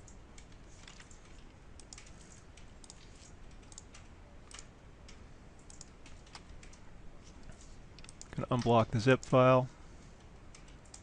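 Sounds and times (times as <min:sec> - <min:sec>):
keyboard typing clicks: 0:00.0 - 0:06.8, 0:08.0 - 0:09.4, 0:10.5 - 0:11.0
low room hum: 0:00.0 - 0:11.0.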